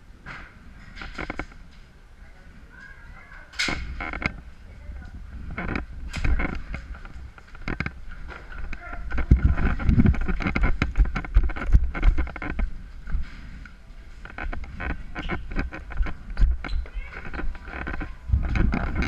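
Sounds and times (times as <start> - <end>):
footsteps: 2.7 - 19.0
knocks and rustling: 3.5 - 19.0
low rumble: 14.2 - 19.0.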